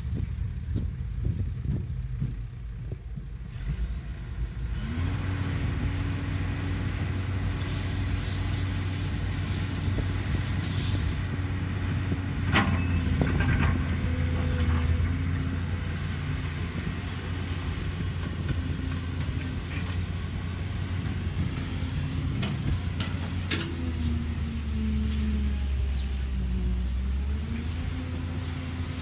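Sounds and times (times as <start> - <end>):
excavator diesel engine running: 0.0 - 29.0
hiss: 7.6 - 11.3, 21.3 - 29.0.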